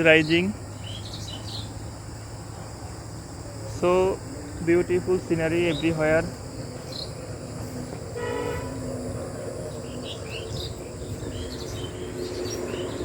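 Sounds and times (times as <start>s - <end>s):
small birds chirping: 0.0s - 13.0s
horn-like tone: 8.2s - 8.9s.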